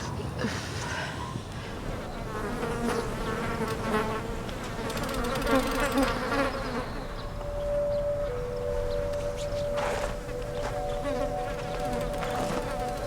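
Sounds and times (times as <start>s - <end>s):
insect buzzing: 2.0s - 13.0s
steady held tone: 6.7s - 13.0s.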